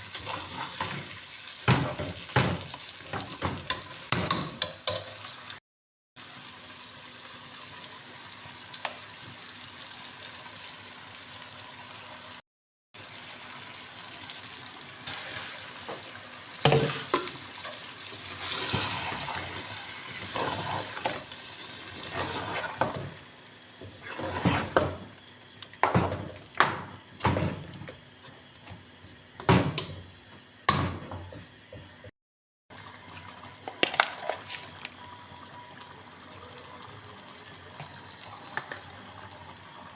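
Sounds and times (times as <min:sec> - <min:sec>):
pan sizzling: 0:00.0 - 0:05.6, 0:06.2 - 0:12.4, 0:13.0 - 0:31.4.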